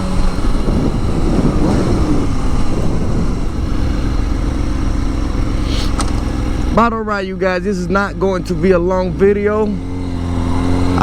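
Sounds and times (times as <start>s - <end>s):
wind rushing over microphone: 0.0s - 6.9s
motorcycle engine running: 0.0s - 11.0s.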